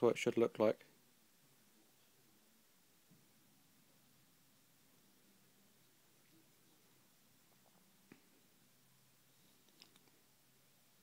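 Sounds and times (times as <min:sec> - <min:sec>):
faint plastic click: 0:09.5 - 0:10.2.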